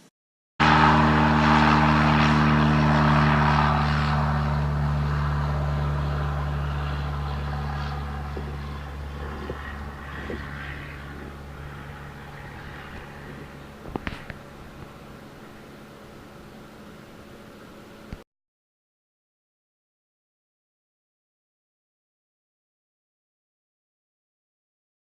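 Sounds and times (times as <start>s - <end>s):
propeller airplane engine: 0.6s - 18.2s.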